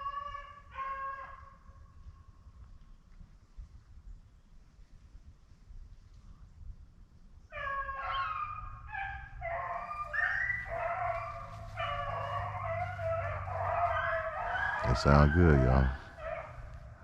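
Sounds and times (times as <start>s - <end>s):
hounds baying: 0.0s - 1.6s, 7.5s - 17.0s.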